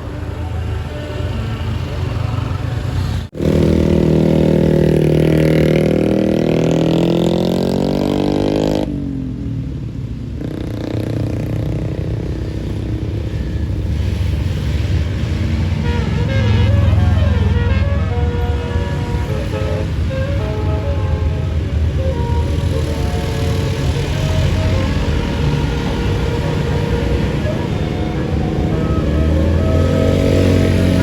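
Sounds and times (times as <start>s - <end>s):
bus engine and road rumble: 0.0s - 31.0s
pitched tones sliding down: 15.8s - 31.0s.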